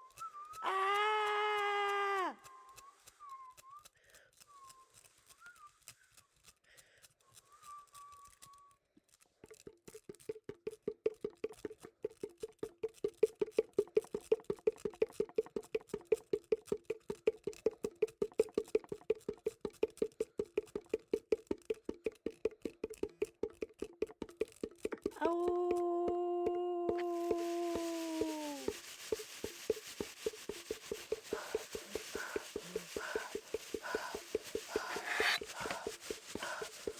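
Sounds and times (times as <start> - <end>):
faint whistled note: 0.0 - 0.7, 2.4 - 6.6, 7.4 - 8.8.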